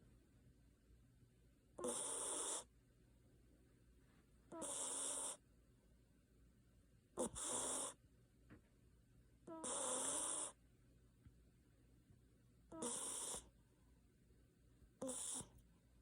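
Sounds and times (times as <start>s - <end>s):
dog snoring: 1.8s - 2.7s, 4.5s - 5.4s, 7.2s - 8.0s, 9.4s - 10.6s, 12.7s - 13.5s, 15.0s - 15.6s.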